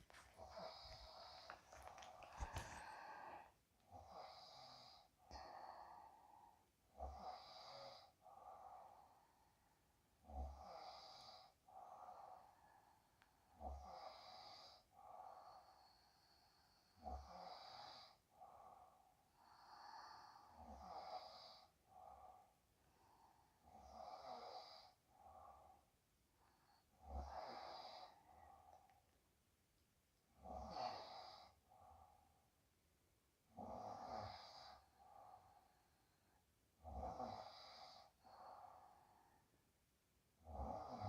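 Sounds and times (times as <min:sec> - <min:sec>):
woman snoring faintly: 0:40.4 - 0:41.0.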